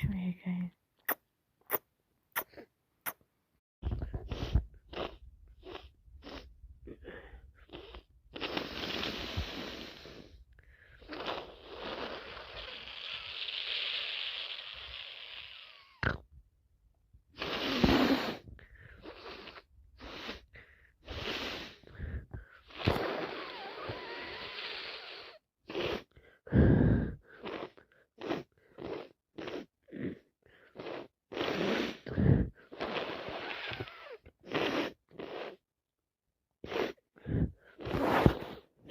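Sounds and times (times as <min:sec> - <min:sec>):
short sniffs: 0:04.1 - 0:05.1, 0:07.7 - 0:10.4, 0:11.1 - 0:15.9, 0:17.4 - 0:26.1, 0:30.8 - 0:35.6, 0:36.6 - 0:38.9
woman breathing through stuffy nose: 0:06.9 - 0:15.9, 0:17.4 - 0:27.7.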